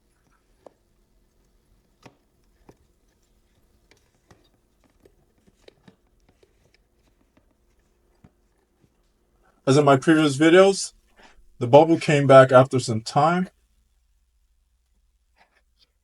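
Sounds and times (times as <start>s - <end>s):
faint light clicks and taps: 1.4s - 9.1s.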